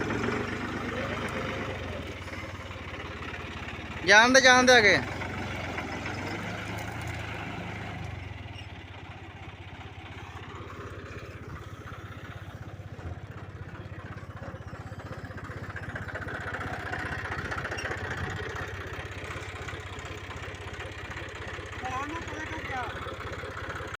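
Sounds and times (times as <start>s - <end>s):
heavy machine engine running: 0.0s - 24.0s.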